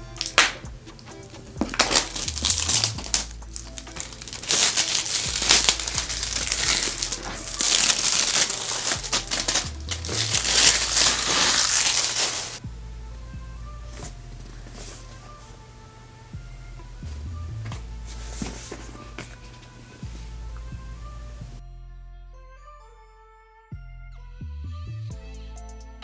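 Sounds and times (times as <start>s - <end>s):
packaging crinkling and rustling: 0.0s - 12.6s
background music: 0.0s - 26.0s.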